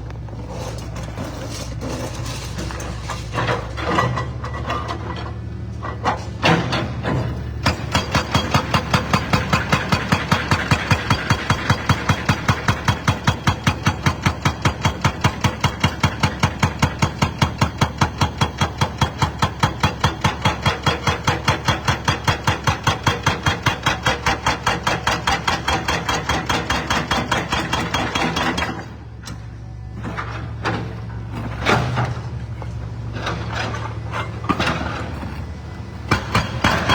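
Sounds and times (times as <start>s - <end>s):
hydraulic breaker hammering concrete: 6.5s - 29.4s, 36.0s - 36.9s.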